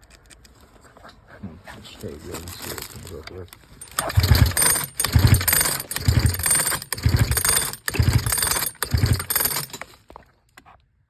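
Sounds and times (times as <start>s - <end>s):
chainsaw recoil starter pulled: 2.3s - 10.1s
engine turning over without firing: 2.5s - 10.0s.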